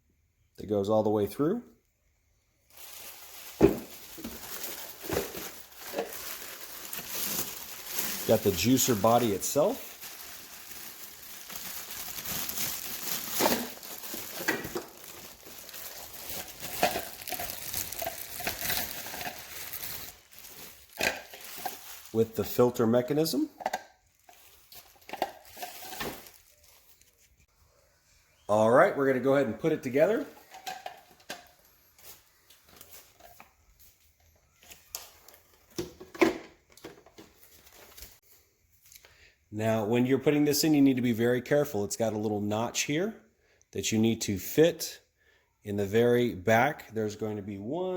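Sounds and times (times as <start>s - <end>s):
packaging crinkling and rustling: 2.7s - 23.4s, 24.0s - 27.5s, 30.2s - 38.2s.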